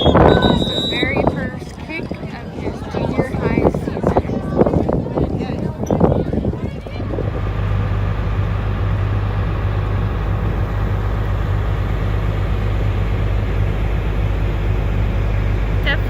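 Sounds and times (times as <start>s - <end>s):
combine harvester running: 0.0s - 1.7s, 6.8s - 16.0s.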